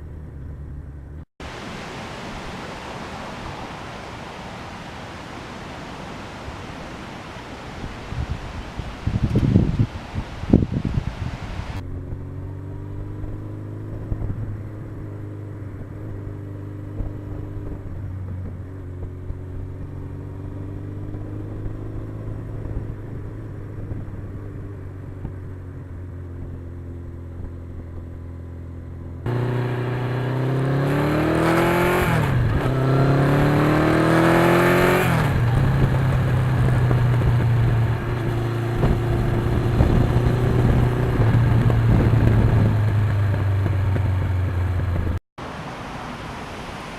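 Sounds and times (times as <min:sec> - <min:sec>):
motorcycle engine revving: 0:11.8 - 0:45.2.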